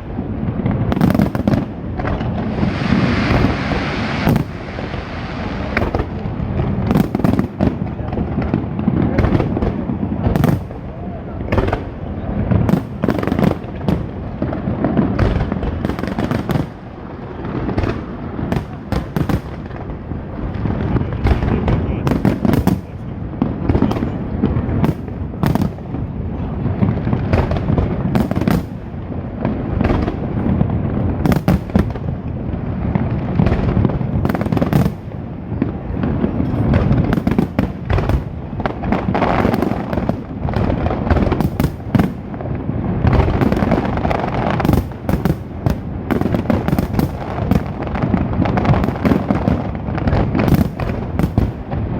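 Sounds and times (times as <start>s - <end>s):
low rumble of booms: 0.0s - 16.6s
fireworks bangs and crackles: 0.0s - 51.9s.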